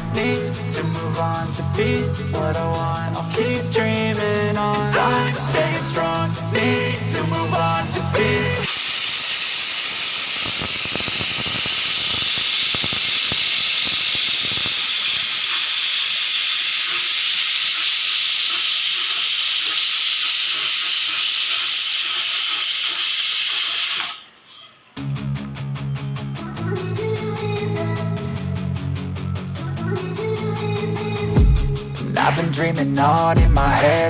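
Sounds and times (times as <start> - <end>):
pressure cooker steam hiss: 3.1 - 24.2.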